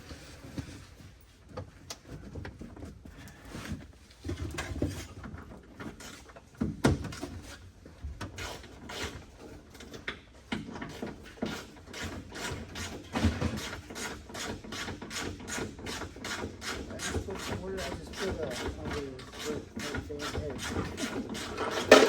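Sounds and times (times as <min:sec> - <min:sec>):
parts and tools clunking and rattling: 0:00.1 - 0:22.0.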